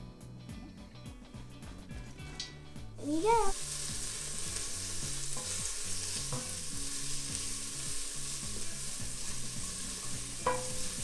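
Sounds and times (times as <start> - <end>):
vegetables sizzling in oil: 3.0 - 11.0.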